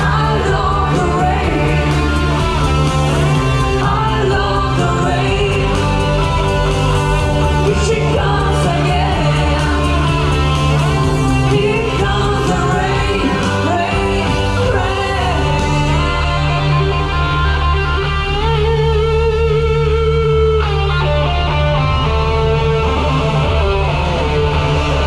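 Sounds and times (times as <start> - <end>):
rock music with singer: 0.0 - 25.0.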